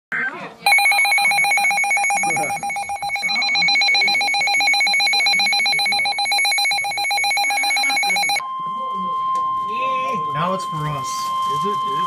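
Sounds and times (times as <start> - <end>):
fast electronic trilling alarm beep: 0.7 - 8.4.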